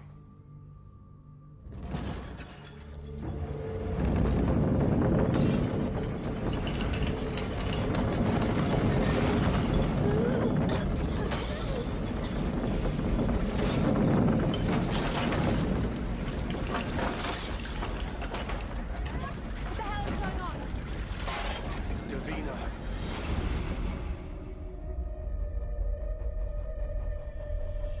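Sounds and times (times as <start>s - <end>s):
deep continuous rumble: 1.6s - 28.0s
things rattling and clattering: 1.7s - 22.7s.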